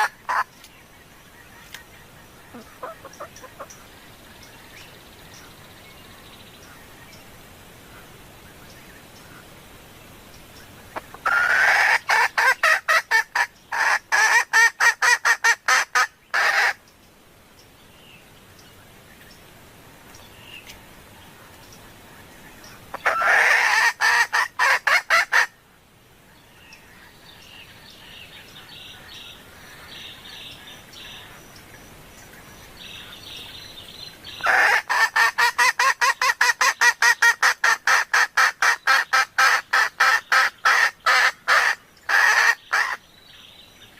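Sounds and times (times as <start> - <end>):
hen clucking rapidly: 0.0 - 0.5, 2.2 - 3.9, 10.9 - 16.8, 22.9 - 25.5, 34.4 - 43.0.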